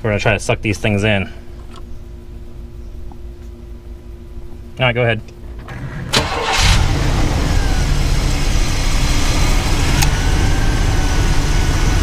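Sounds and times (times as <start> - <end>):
truck engine starting and idling: 5.6 - 12.0.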